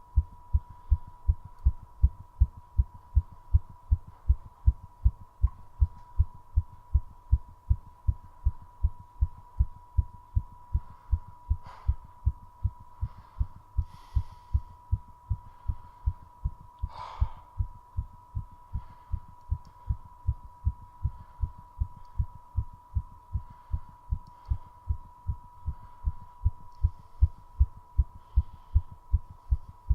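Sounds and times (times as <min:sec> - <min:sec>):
fast heartbeat thumps: 0:00.2 - 0:29.9
person breathing: 0:10.7 - 0:29.9.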